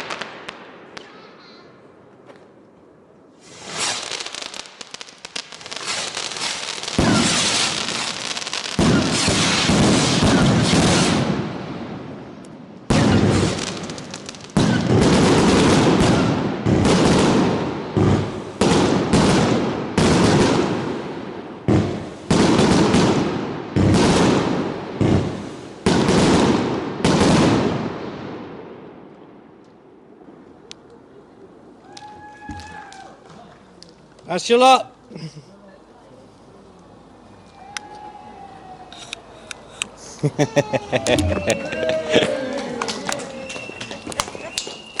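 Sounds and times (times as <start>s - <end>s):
fireworks crackling bangs: 0.0s - 1.6s, 3.3s - 35.1s, 35.8s - 45.0s
loud firework shots: 0.0s - 1.6s, 3.4s - 29.5s.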